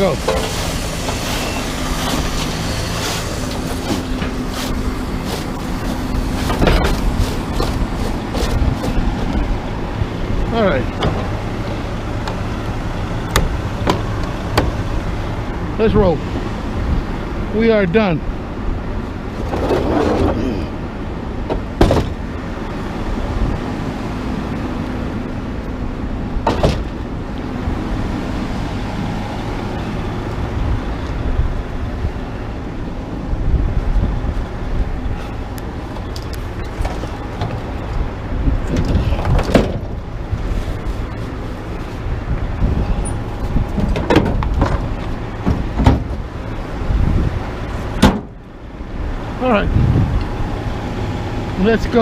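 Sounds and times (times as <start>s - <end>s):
road noise: 0.0s - 52.0s
truck engine hum: 0.0s - 52.0s
sharp knocks and rattles: 43.1s - 46.3s.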